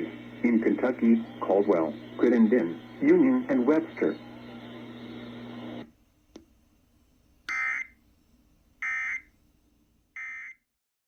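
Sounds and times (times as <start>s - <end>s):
buzzy digital data bursts: 0.0s - 5.8s
steady low hum: 0.0s - 8.8s
click: 6.3s - 6.5s.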